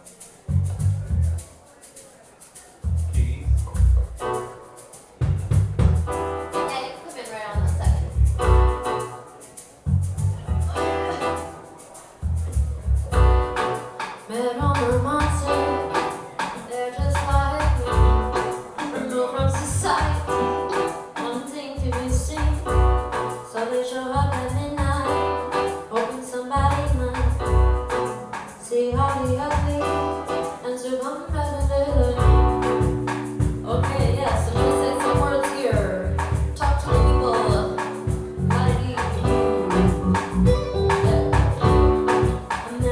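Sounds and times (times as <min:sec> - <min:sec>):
live band bass and drums: 0:02.8 - 0:04.4, 0:05.2 - 0:06.4, 0:07.6 - 0:09.0, 0:12.2 - 0:14.0, 0:14.6 - 0:20.9, 0:21.8 - 0:23.3, 0:26.6 - 0:30.4, 0:31.4 - 0:42.9
person singing: 0:14.3 - 0:22.5, 0:32.1 - 0:42.9.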